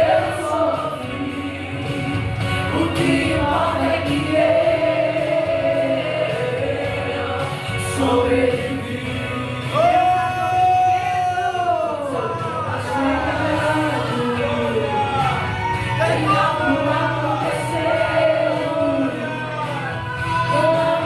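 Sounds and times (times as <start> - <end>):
gospel singing: 0.0 - 21.0.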